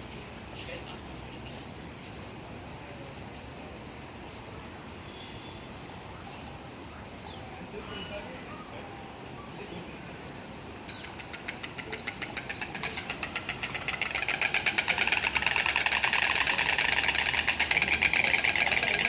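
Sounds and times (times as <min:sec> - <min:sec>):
bird beak clattering: 0:11.0 - 0:19.0.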